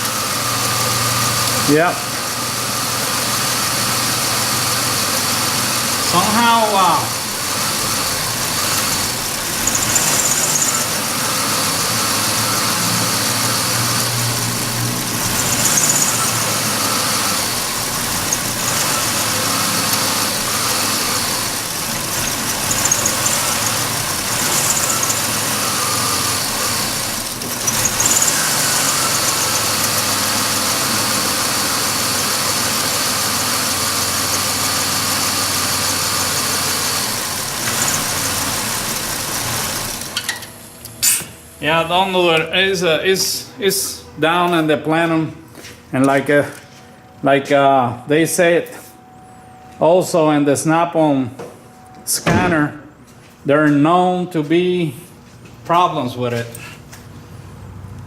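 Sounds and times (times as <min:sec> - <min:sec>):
car engine idling: 0:00.0 - 0:44.3.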